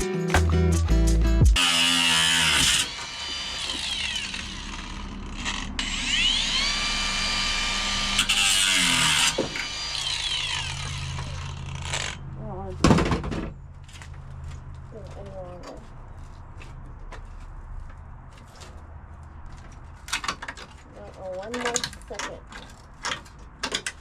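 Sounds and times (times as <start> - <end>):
power drill drilling sheet steel: 1.6 - 12.2.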